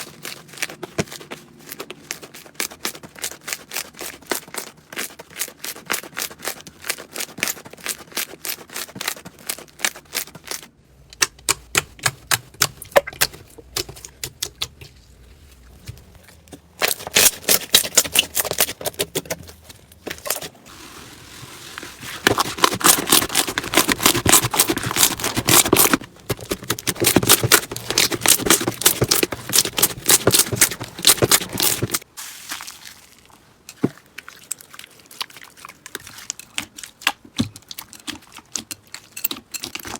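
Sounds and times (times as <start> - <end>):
slime crackling and popping: 22.4 - 33.4.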